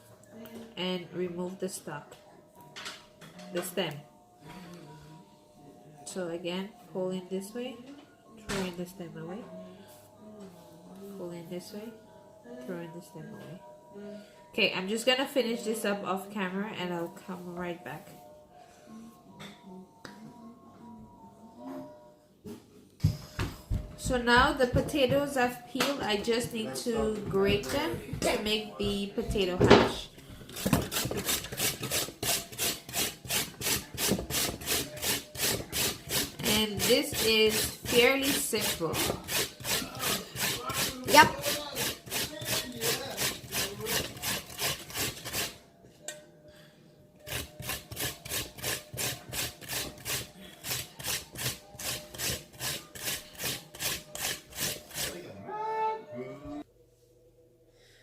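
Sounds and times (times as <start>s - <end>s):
potatoes grated on metal grater: 30.5s - 45.6s, 47.3s - 55.2s.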